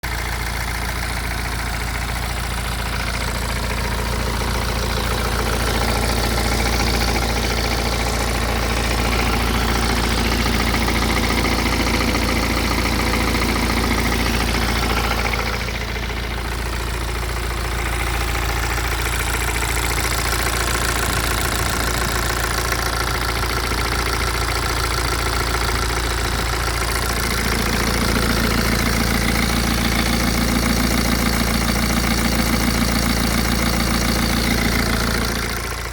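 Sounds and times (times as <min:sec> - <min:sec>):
diesel engine idling with rattle: 0:00.0 - 0:35.9.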